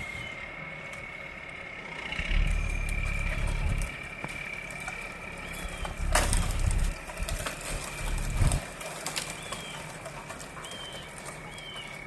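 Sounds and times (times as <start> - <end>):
low rumbling: 0.0 - 12.0
bird chirps: 5.2 - 6.9, 9.2 - 9.9, 10.6 - 12.0.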